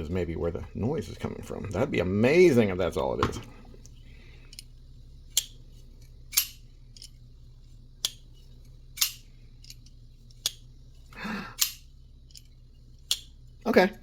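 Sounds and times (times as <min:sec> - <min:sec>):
folding knife clicking open and shut: 0:11.6 - 0:12.5, 0:13.1 - 0:13.3.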